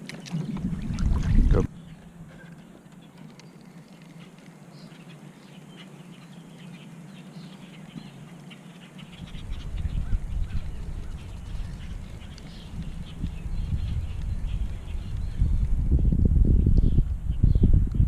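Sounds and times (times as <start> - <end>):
faint outdoor hiss: 0.0 - 15.9
birds chirping: 0.0 - 17.8
low rumble: 0.3 - 2.2.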